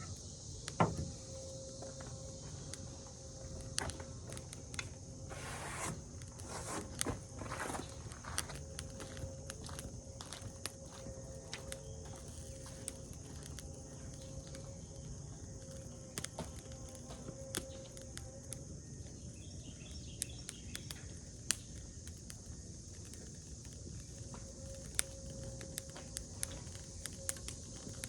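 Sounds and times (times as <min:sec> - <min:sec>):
insects droning: 0:00.0 - 0:28.0
faint clicks and ticks: 0:20.0 - 0:28.0.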